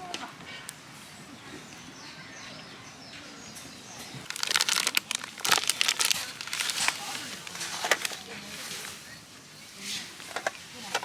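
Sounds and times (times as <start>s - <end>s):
plastic packaging crinkling: 4.2s - 9.1s, 10.2s - 11.0s.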